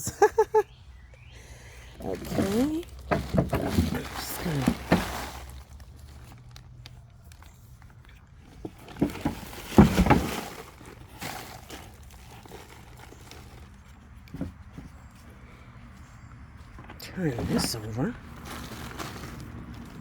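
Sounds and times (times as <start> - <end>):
plastic bag scraping: 1.9 - 7.8, 8.5 - 14.6, 17.0 - 20.0
knocks in wheelbarrow: 2.2 - 5.5, 8.9 - 10.7.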